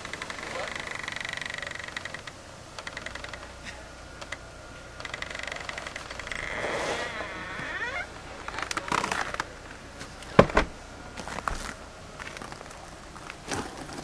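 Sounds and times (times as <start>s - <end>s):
footsteps crunching in snow: 11.2s - 14.0s.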